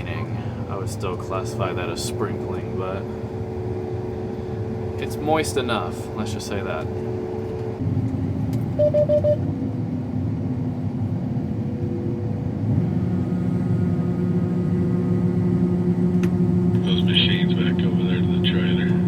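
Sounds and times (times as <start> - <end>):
combine harvester engine rumble: 0.0 - 19.0.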